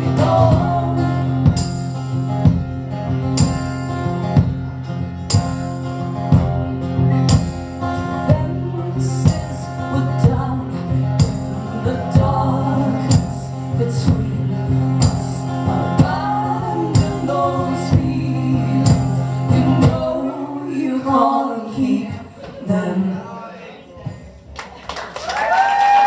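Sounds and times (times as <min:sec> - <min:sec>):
wordless vocal line: 0:00.0 - 0:01.7, 0:07.9 - 0:23.9
band playing live: 0:00.0 - 0:20.4.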